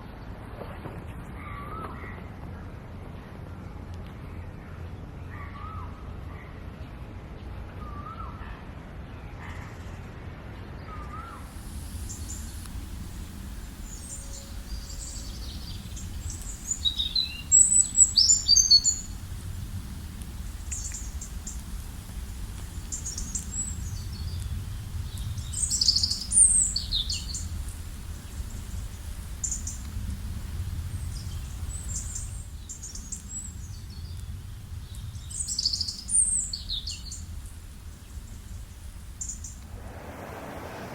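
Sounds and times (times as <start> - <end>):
steady low rumble: 39.5 - 40.9.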